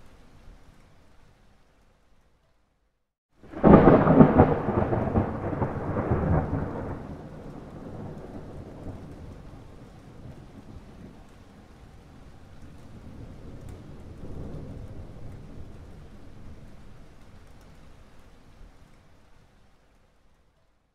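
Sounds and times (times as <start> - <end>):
rain hiss: 0.0 - 2.4, 3.4 - 20.6
thunder crack and rumble: 3.4 - 17.4.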